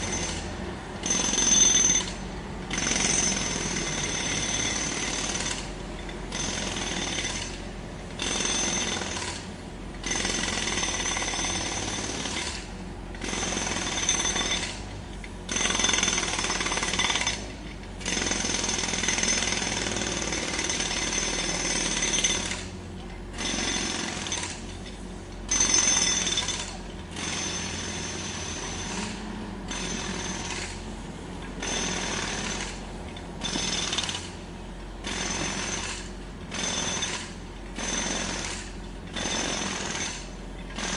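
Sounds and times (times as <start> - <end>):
jackhammer breaking road surface: 0.0 - 30.9, 31.5 - 40.9.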